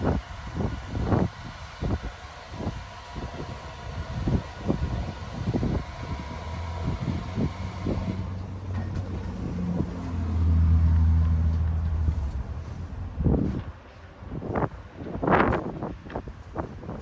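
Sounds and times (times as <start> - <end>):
hair dryer blowing air: 0.0 - 8.3.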